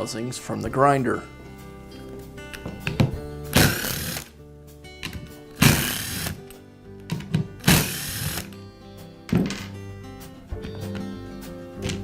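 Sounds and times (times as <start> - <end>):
background music: 0.0 - 12.0
electric screwdriver whirring: 3.6 - 4.3, 5.6 - 6.4, 7.6 - 8.6.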